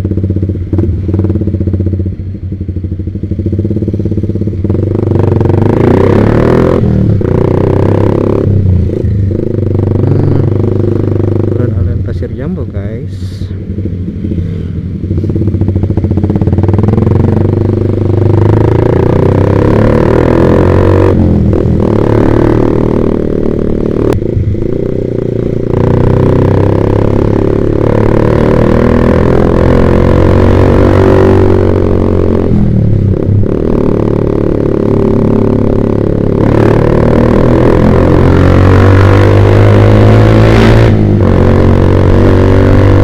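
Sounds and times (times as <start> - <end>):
motorcycle engine shifting gears: 13.8 - 43.0.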